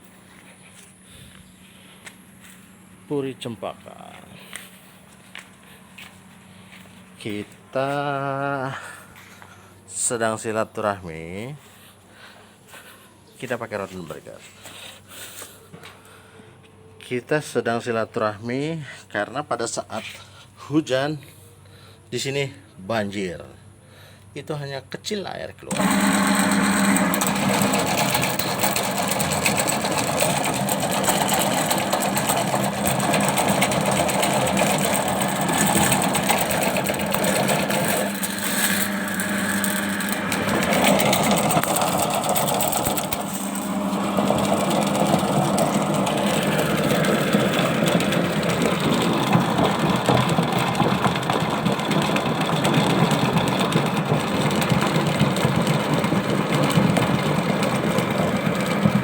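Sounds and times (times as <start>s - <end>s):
drain cleaning machine motor humming: 25.7s - 59.0s
steel cable rattling: 25.7s - 59.0s.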